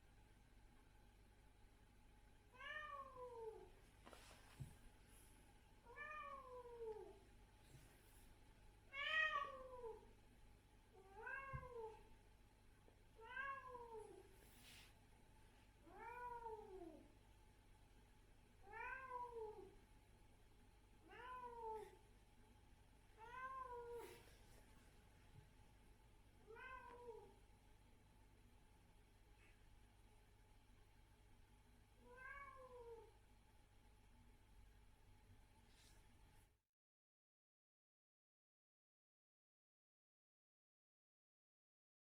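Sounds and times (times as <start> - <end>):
cat meowing: 8.9 - 10.0, 11.0 - 11.9, 21.1 - 22.0, 26.5 - 27.3, 32.0 - 33.1.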